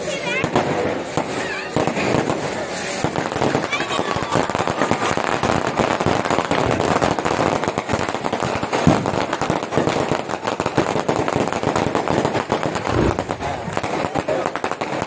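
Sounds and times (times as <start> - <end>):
firecrackers crackling: 0.0 - 15.0
loud firecracker bang: 11.9 - 15.0.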